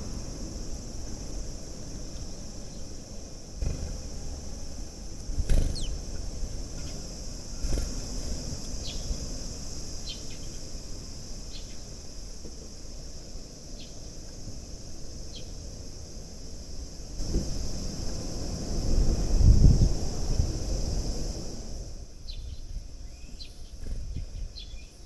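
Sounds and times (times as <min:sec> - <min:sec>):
low outdoor rumble: 0:00.0 - 0:11.1
high-pitched insect drone: 0:00.0 - 0:25.0
sparrows chirping: 0:03.6 - 0:10.8, 0:11.4 - 0:12.0, 0:22.2 - 0:25.0.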